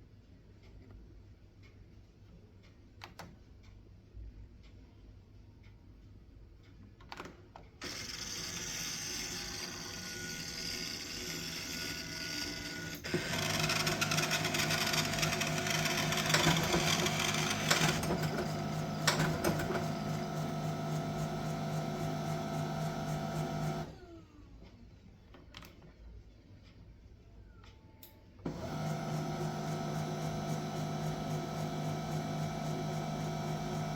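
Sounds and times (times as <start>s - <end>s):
printer motors running: 7.8s - 24.2s, 28.5s - 33.9s
printer click: 13.0s - 24.0s, 28.5s - 33.9s.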